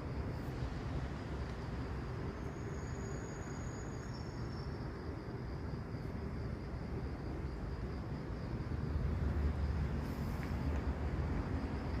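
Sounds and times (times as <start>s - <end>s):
insects trilling: 0.0s - 12.0s.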